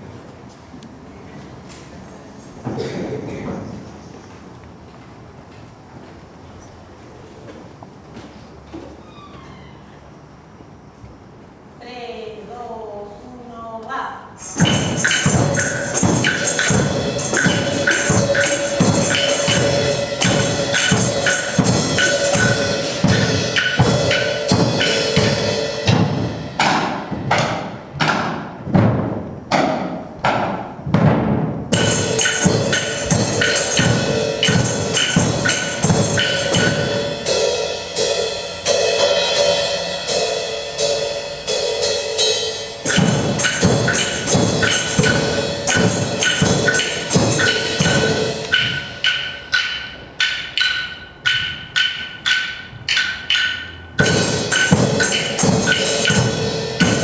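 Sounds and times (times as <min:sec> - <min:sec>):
wood-block percussion beat: 0:14.4 - 0:28.6, 0:31.7 - 0:39.9, 0:42.2 - 0:57.0.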